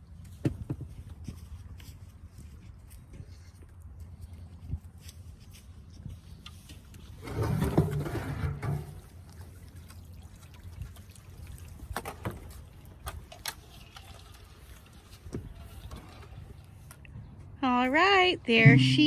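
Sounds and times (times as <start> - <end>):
water trickling: 8.8 - 16.9.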